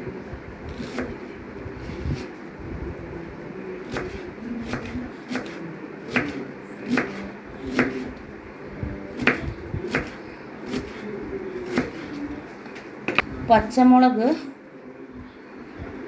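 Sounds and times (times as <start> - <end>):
knife chopping on cutting board: 3.9 - 8.1, 9.2 - 11.0.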